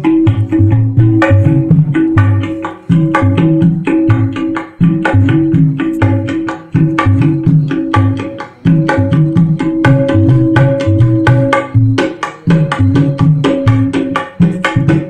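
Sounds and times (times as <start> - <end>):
amplified hand drumming: 0.0 - 15.0.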